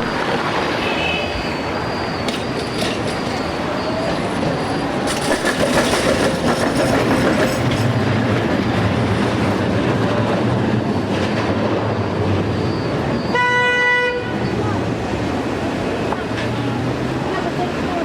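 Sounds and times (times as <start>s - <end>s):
tram running on rails: 0.0s - 18.0s
wheels clicking over rail joints: 2.2s - 11.9s.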